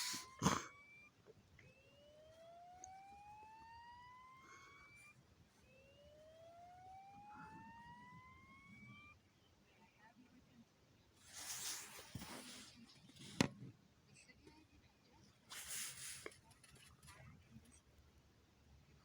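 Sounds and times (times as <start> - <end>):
fire alarm whoop tone: 1.8 - 9.2.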